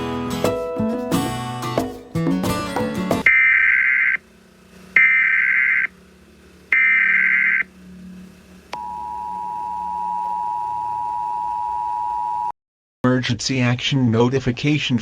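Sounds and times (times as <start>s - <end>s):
harsh buzzing data bursts: 5.0s - 6.0s, 6.7s - 7.7s
two-tone attention signal: 8.8s - 12.5s.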